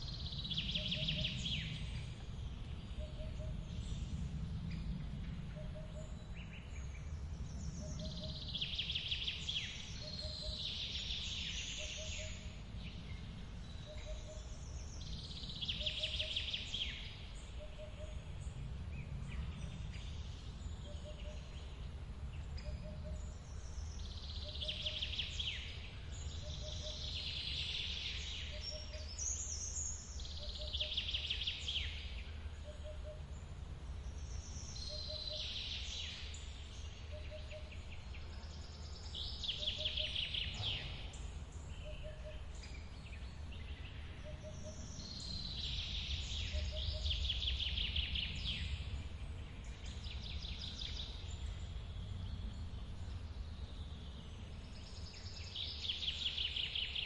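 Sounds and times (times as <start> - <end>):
birds singing trilled phrases: 34.0 - 49.2.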